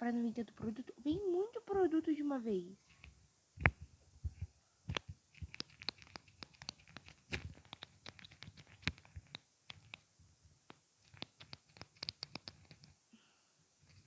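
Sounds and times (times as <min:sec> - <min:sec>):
mascara wand clicking in tube: 0:04.9 - 0:10.0, 0:10.7 - 0:12.9.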